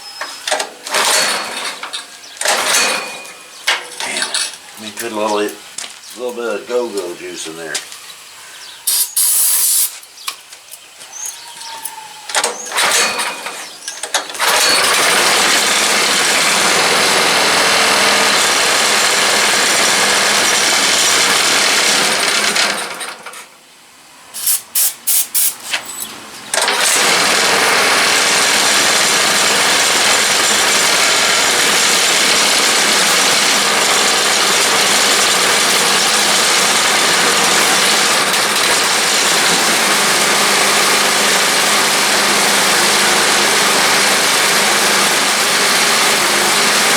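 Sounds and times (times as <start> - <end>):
small engine running: 0.8 - 3.2, 12.4 - 23.2, 26.6 - 46.9
engine sputtering: 12.5 - 23.2, 26.5 - 46.9.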